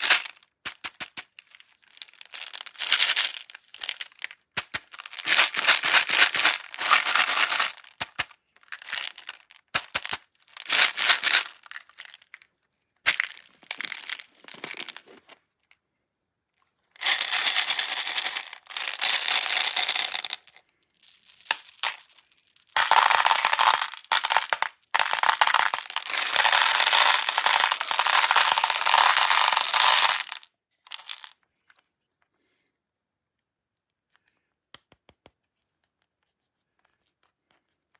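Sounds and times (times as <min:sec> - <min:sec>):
plastic beads pouring: 0:00.0 - 0:12.4, 0:13.1 - 0:15.2, 0:17.0 - 0:31.4.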